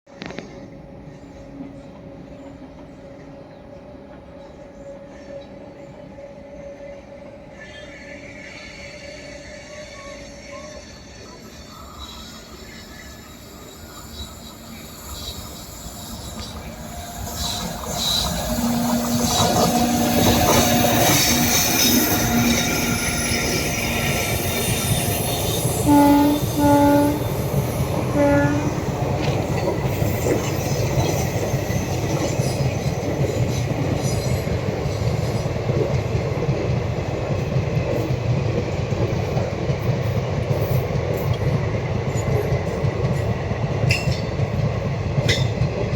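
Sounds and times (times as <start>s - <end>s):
train wheels rumbling on rail: 0.1s - 45.9s
train horn blasts: 16.6s - 29.1s.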